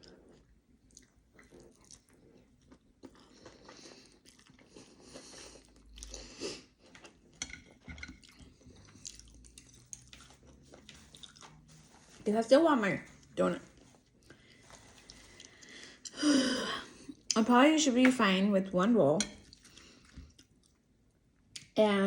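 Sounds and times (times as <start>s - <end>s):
person chewing crunchy food: 0.0s - 12.3s, 13.1s - 16.2s, 19.2s - 20.9s.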